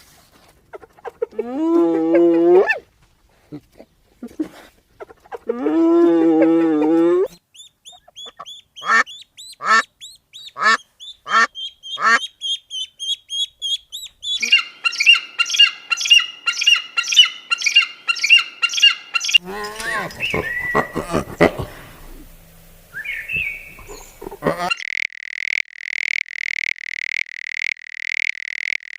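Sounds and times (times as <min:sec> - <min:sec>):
high quick bird chirps: 0:07.5 - 0:20.9, 0:22.9 - 0:24.3
dense fast bird chatter: 0:07.7 - 0:21.4.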